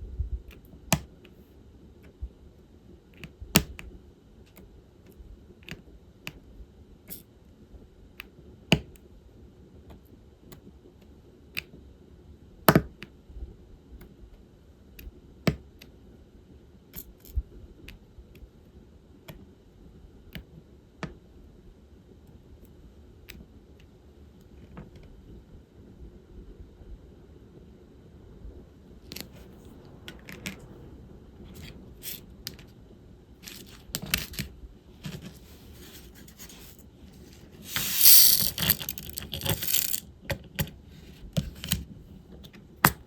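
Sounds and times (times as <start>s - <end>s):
pen tapping resin drills: 37.6s - 40.0s.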